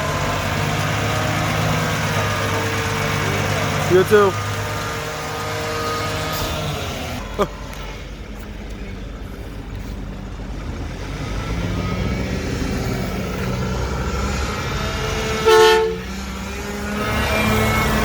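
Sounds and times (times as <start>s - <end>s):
garbage truck diesel engine: 0.0s - 18.0s
truck horn toot: 15.2s - 16.4s.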